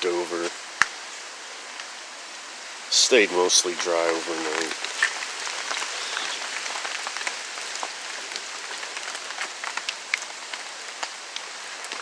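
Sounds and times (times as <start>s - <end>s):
rain drop ticks: 0.0s - 1.0s, 1.7s - 12.0s
steady rain falling: 0.0s - 12.0s.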